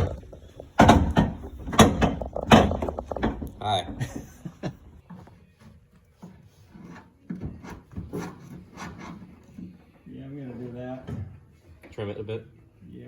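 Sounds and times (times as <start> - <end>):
scraping and rubbing: 0.0 - 9.8.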